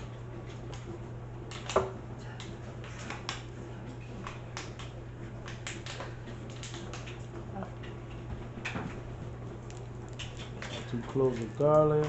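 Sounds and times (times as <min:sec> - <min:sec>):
steady low hum: 0:00.0 - 0:12.0
garlic cloves crackling: 0:09.6 - 0:12.0.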